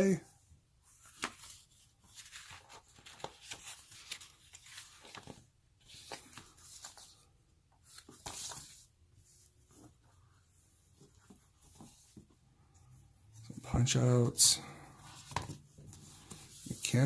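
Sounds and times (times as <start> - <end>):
paper sliding and rustling: 0.9 - 12.3, 14.9 - 17.0.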